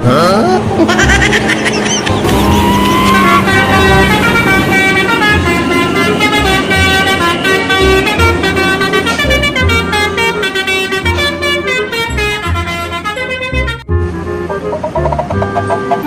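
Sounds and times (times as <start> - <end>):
low beats: 0.6 - 10.3
musical air horns playing tune: 2.2 - 14.7.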